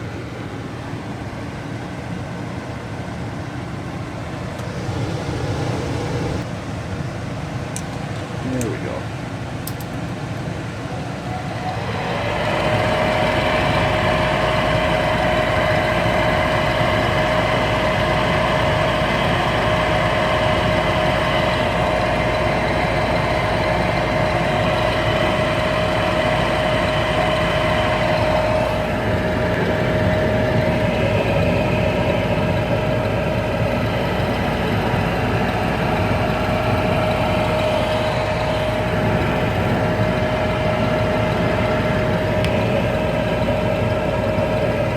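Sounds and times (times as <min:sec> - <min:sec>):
gas furnace humming: 0:00.0 - 0:44.9.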